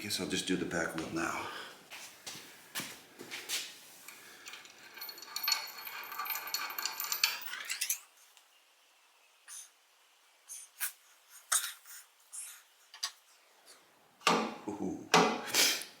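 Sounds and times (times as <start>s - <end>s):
metal parts clinking and ringing: 4.4s - 8.1s.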